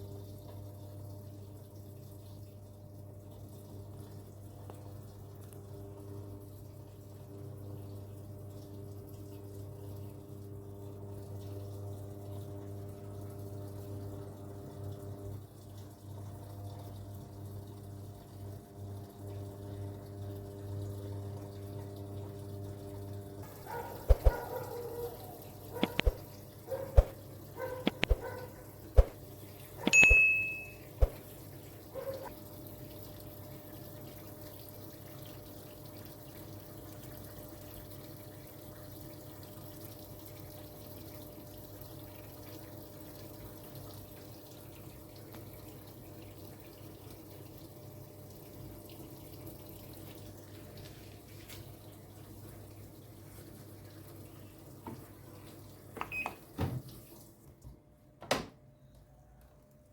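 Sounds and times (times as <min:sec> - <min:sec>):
washing machine hum: 0:00.0 - 0:59.9
sharp clicks and knocks: 0:25.8 - 0:26.2, 0:27.8 - 0:28.3
high beep: 0:29.9 - 0:30.9.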